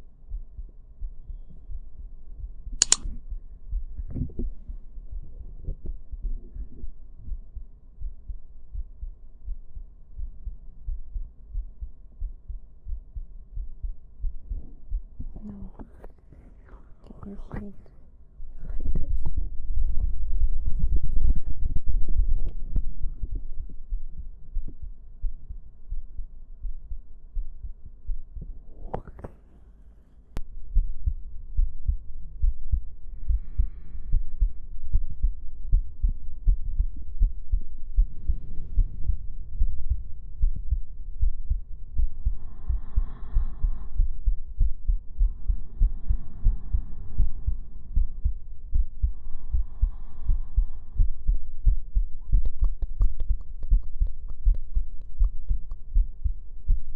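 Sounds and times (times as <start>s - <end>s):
amplified heartbeat thumps: 0.0s - 16.1s, 18.4s - 29.0s, 30.3s - 56.9s
sharp click: 2.8s - 3.2s.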